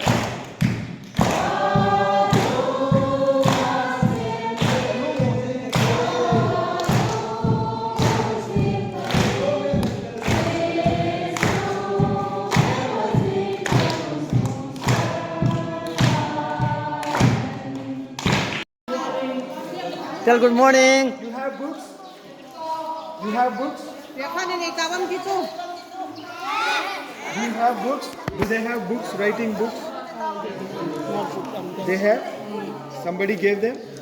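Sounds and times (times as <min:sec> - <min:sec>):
thumping beat: 0:00.0 - 0:18.6
choir singing gospel: 0:00.0 - 0:32.9.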